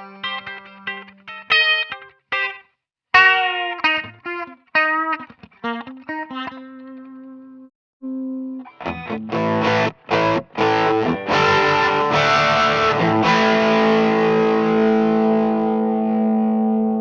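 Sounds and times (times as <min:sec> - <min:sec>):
electric guitar chord stabs: 0:06.4 - 0:17.0.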